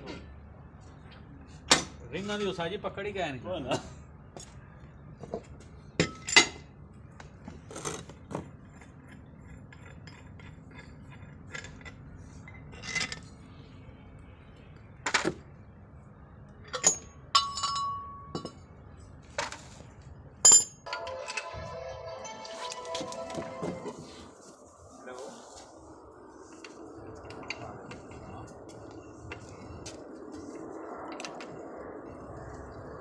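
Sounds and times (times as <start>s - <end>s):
metal tools clinking: 16.7s - 18.6s.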